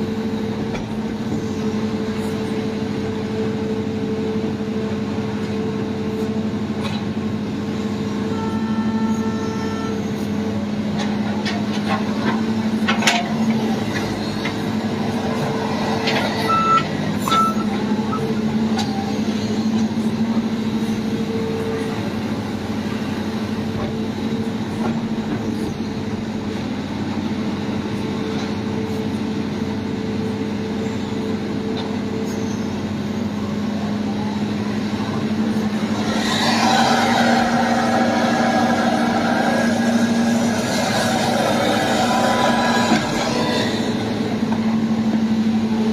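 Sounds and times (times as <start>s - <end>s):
diesel engine running: 0.0s - 45.9s
loud rough noise: 35.1s - 45.9s.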